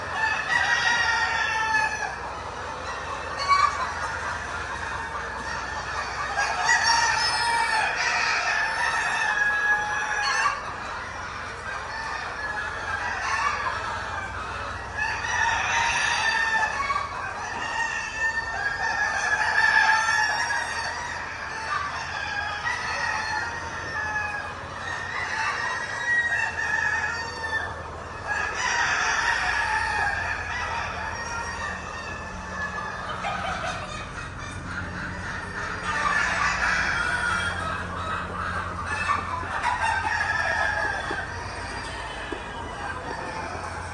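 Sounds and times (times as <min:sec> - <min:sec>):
hens clucking: 0:00.0 - 0:43.9.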